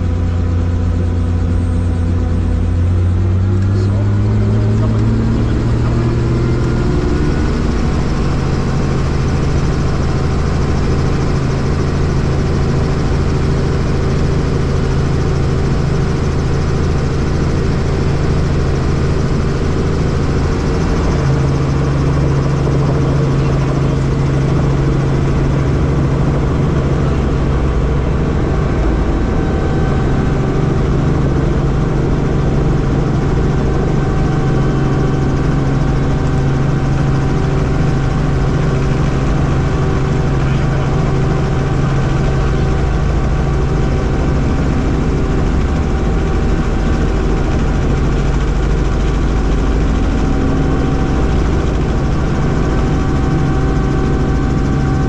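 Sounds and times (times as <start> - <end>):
helicopter engine and rotor drone: 0.0 - 55.0.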